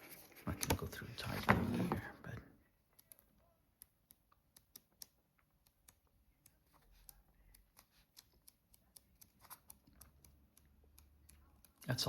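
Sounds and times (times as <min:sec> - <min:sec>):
paper pages turning: 0:09.2 - 0:09.8.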